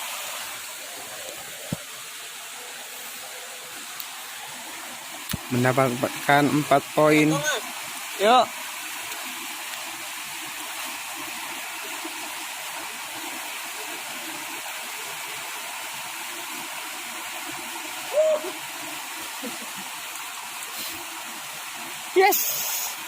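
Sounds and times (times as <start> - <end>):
river water rushing: 0.0 - 23.0
loud hoot-like call: 18.1 - 18.6.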